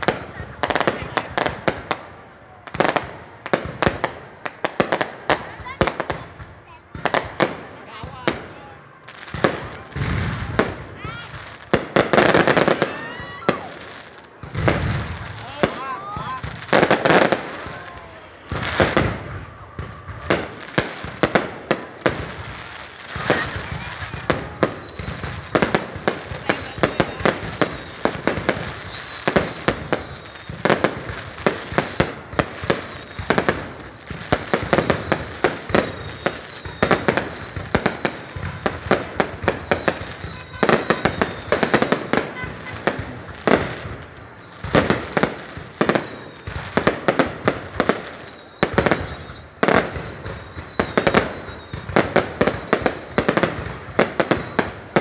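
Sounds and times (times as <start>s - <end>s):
fireworks bangs: 0.0s - 55.0s
falling whistles: 12.2s - 13.9s, 15.0s - 21.2s, 22.4s - 55.0s.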